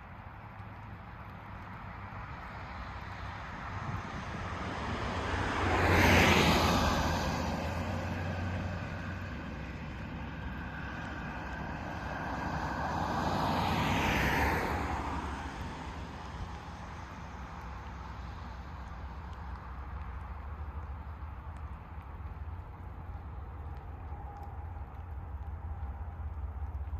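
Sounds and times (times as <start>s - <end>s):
diesel locomotive engine drone: 2.7s - 26.9s
train wheel and rail noise: 22.2s - 26.9s.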